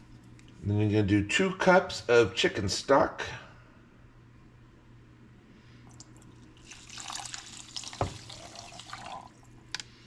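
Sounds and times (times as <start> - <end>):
liquid splashing into dish: 5.9 - 9.4
click: 9.7 - 9.9.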